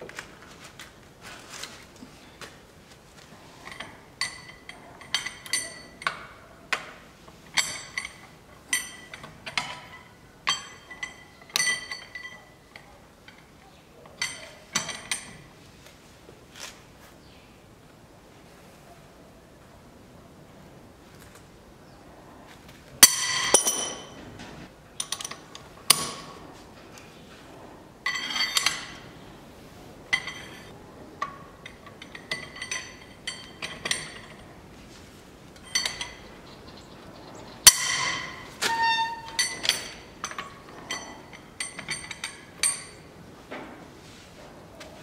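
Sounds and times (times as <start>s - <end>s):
metal tools and parts clanking: 3.5s - 15.6s, 23.0s - 27.4s, 28.0s - 44.2s.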